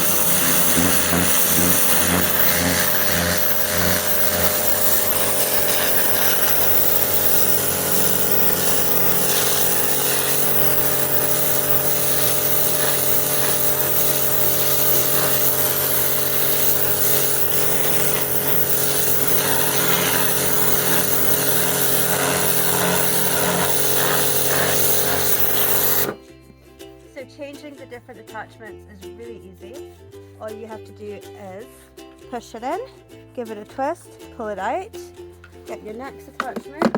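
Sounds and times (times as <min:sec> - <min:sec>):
high-pressure water jet hissing: 0:00.0 - 0:26.2
pressure washer motor humming: 0:00.0 - 0:26.2, 0:36.4 - 0:36.9.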